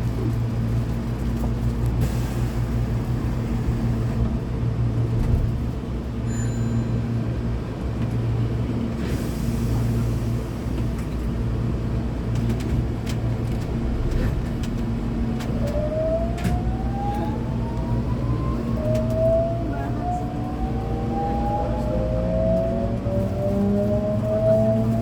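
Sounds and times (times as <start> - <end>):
train low rumble: 0.0 - 25.0
train inverter whining: 11.7 - 25.0.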